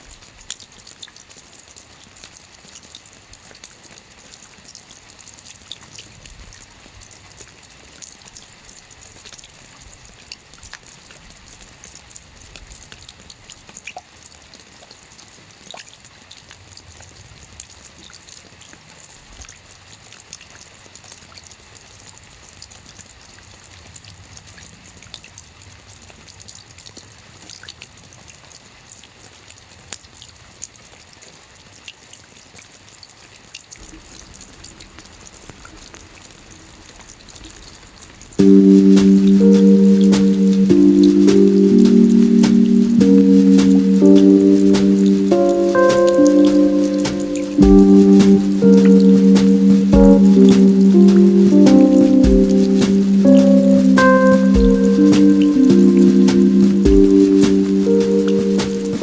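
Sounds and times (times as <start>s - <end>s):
steady rain: 33.8s - 59.0s.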